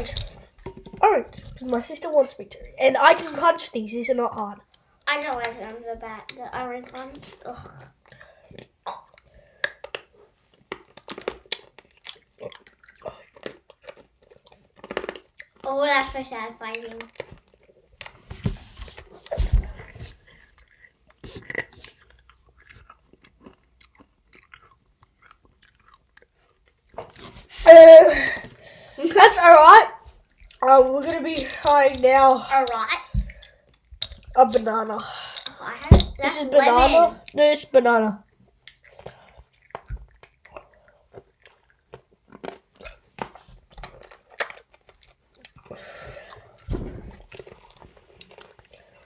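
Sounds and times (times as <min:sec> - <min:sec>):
hard candy being chewed: 0:00.0 - 0:03.7, 0:04.5 - 0:27.7, 0:30.1 - 0:37.4, 0:38.2 - 0:49.0
child vocal sound: 0:27.5 - 0:30.0
thump: 0:46.7 - 0:47.2.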